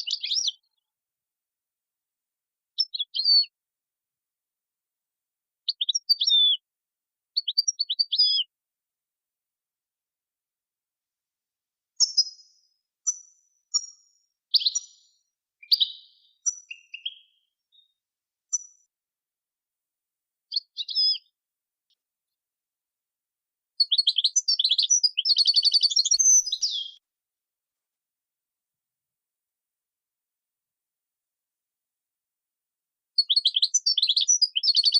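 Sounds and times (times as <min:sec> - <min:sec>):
songbird chirping and trilling: 0:00.0 - 0:00.8, 0:02.8 - 0:03.6, 0:05.6 - 0:06.7, 0:07.4 - 0:08.5, 0:12.0 - 0:18.8, 0:20.5 - 0:21.4, 0:23.8 - 0:27.0, 0:33.2 - 0:34.9.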